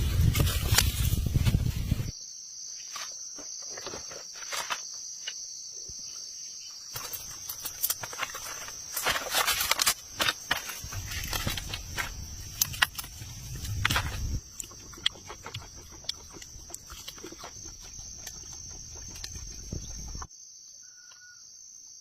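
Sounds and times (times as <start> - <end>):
insects chirring: 0.0 - 22.0.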